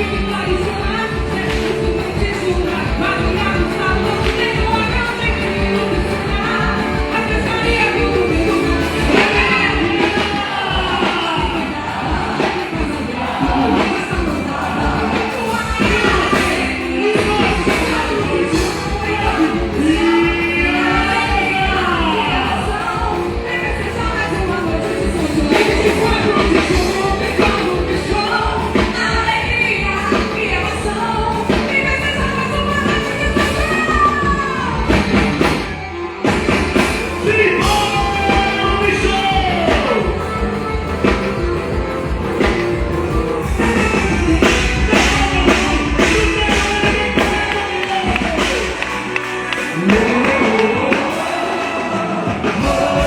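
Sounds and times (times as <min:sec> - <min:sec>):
melody sung or played: 0:35.8 - 0:53.0
dense drum beat: 0:36.3 - 0:51.4, 0:52.3 - 0:53.0.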